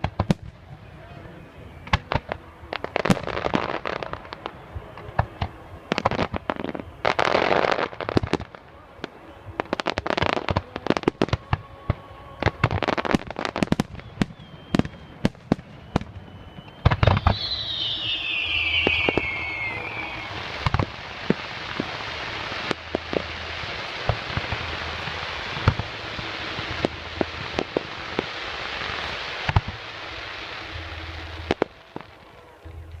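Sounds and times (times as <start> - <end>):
fireworks bangs and pops: 0.0 - 0.8, 1.8 - 33.0
crackling hiss: 0.0 - 33.0
falling firework whistle: 9.1 - 32.8.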